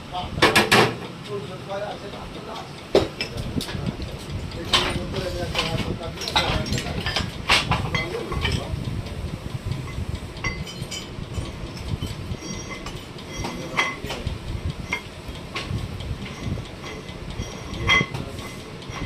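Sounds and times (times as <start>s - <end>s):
steady low rumble: 0.0s - 19.0s
light metallic clinks and knocks: 10.4s - 19.0s.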